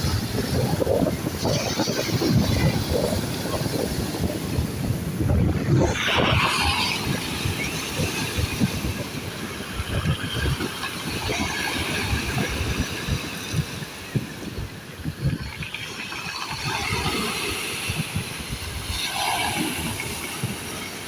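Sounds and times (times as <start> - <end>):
sea waves breaking: 0.0 - 21.0
wind buffeting microphone: 0.0 - 21.0.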